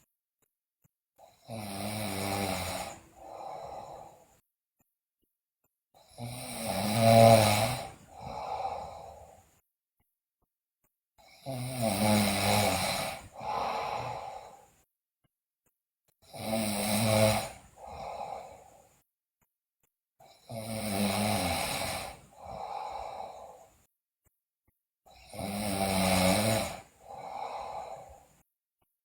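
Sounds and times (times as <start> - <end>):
girl snoring loudly: 1.2 - 4.4, 6.0 - 9.4, 11.3 - 14.7, 16.2 - 18.8, 20.3 - 23.7, 25.1 - 28.4.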